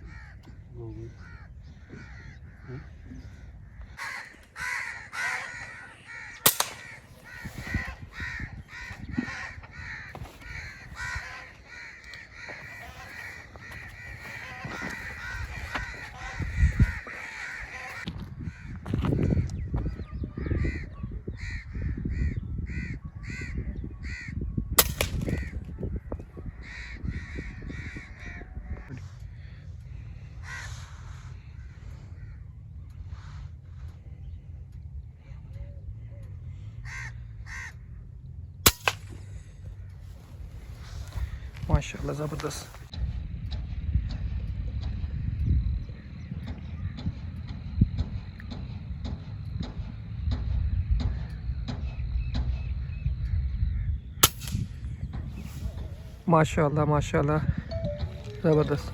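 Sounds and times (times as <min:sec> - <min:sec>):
crows cawing: 0:00.0 - 0:34.4, 0:36.5 - 0:38.0, 0:38.7 - 0:42.9, 0:52.9 - 0:56.2
air rifle shots: 0:06.3 - 0:08.4, 0:24.8 - 0:25.6, 0:38.6 - 0:39.4, 0:54.2 - 0:55.5.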